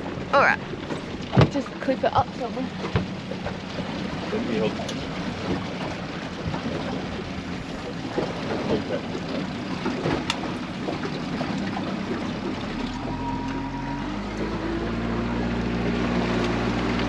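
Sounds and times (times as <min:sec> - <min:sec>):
motor boat engine running: 0:00.0 - 0:17.0
rushing water: 0:00.0 - 0:17.0
small knocks and splashes: 0:00.0 - 0:17.0
wind: 0:00.0 - 0:17.0.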